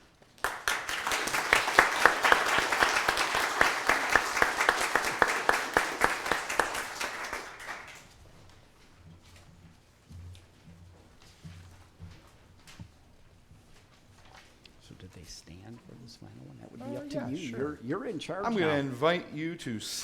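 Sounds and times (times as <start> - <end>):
congregation applauding: 0.4 - 8.2, 16.8 - 20.0.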